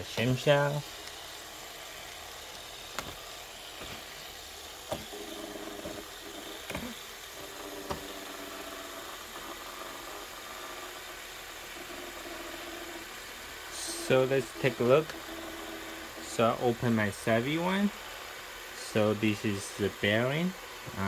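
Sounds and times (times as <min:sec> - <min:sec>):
fidget spinner bearings whirring: 0:00.0 - 0:21.0
fidget spinner flicking clicks: 0:00.1 - 0:05.1.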